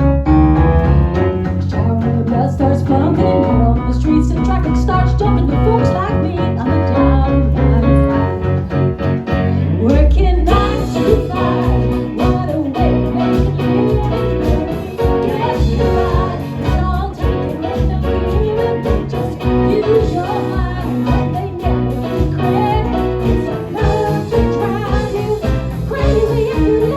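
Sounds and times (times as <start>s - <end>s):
live band with singer: 0.0s - 26.9s.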